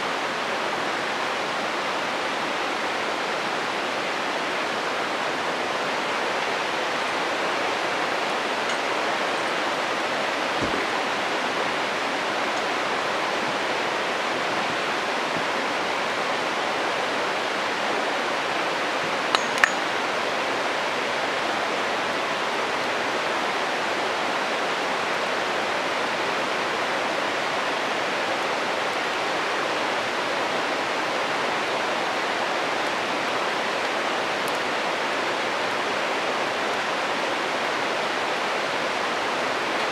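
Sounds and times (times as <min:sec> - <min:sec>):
stream rushing: 0:00.0 - 0:39.9
campfire wood popping: 0:08.2 - 0:09.8, 0:10.4 - 0:13.5, 0:19.0 - 0:20.1.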